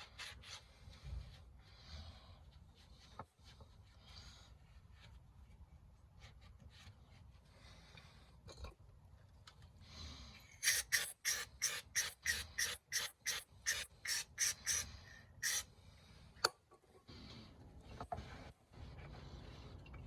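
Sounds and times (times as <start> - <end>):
spray bottle hissing: 10.6 - 15.6.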